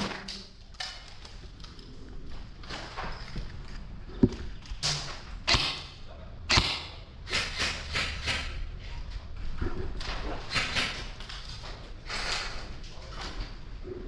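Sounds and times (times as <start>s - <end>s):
rustling and shuffling: 0.0s - 4.8s.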